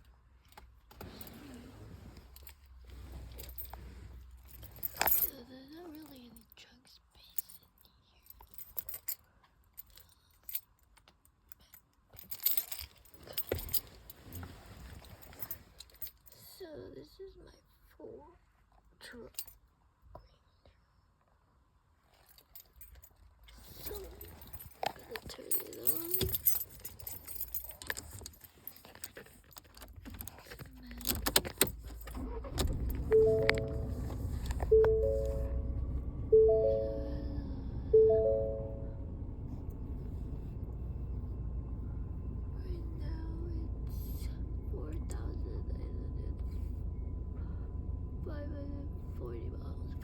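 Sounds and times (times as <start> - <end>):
jingling clatter like keys: 2.2 - 6.5, 7.3 - 16.4, 22.1 - 34.6
low hum: 32.5 - 50.0
electronic dashboard chime: 33.1 - 39.1.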